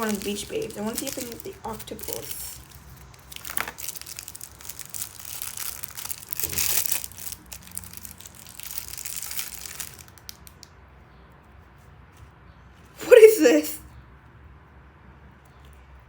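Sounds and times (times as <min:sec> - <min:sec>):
plastic wrapper crinkling: 0:00.0 - 0:10.7.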